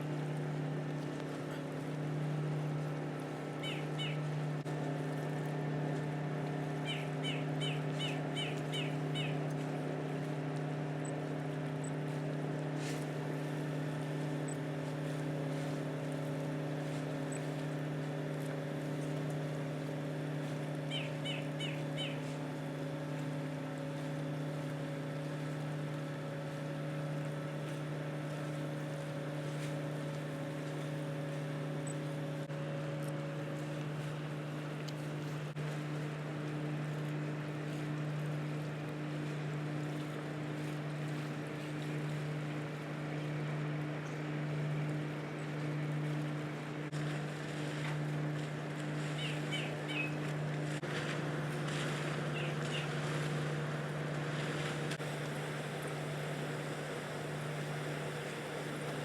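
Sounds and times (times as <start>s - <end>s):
ship engine drone: 0.0s - 59.0s
high bird chirps: 3.6s - 4.2s.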